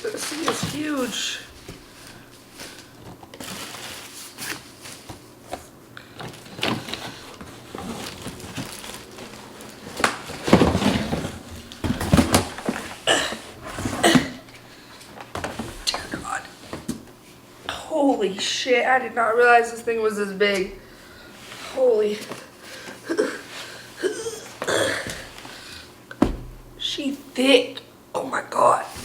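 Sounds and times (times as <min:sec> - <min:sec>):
cardboard and plastic rustling: 0:00.0 - 0:17.4, 0:19.6 - 0:26.8
knocks and bumps: 0:26.2 - 0:26.8.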